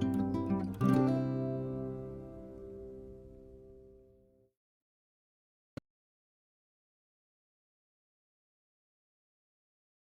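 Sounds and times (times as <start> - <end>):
acoustic guitar music: 0.0 - 4.4.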